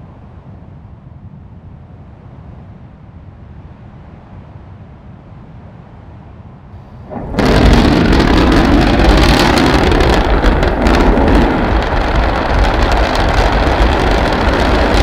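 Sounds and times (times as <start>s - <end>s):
low steady rumble: 6.8s - 15.0s
loud rumbling roar: 7.0s - 15.0s.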